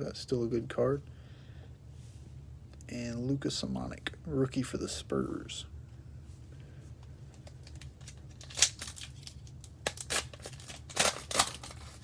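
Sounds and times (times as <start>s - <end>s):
plastic wrapper crinkling and ripping: 7.3s - 12.0s.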